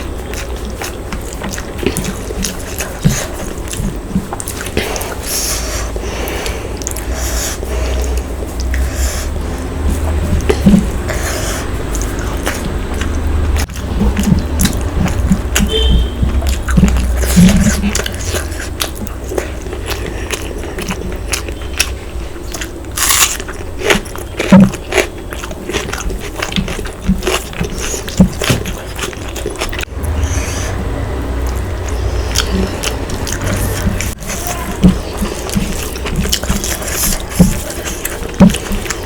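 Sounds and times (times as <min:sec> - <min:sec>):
steady low hum: 0:00.0 - 0:39.0
wet chewing and lip smacks: 0:00.0 - 0:39.0
crunchy bites: 0:11.9 - 0:30.8.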